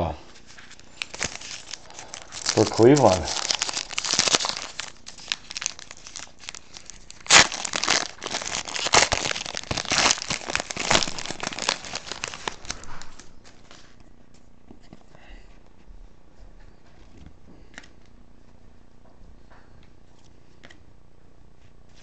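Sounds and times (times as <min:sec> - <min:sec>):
plastic wrapper crinkling and tearing: 0:00.4 - 0:14.0.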